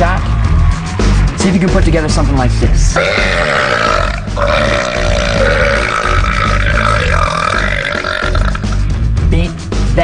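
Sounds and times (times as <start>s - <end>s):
man burping: 3.0s - 8.8s.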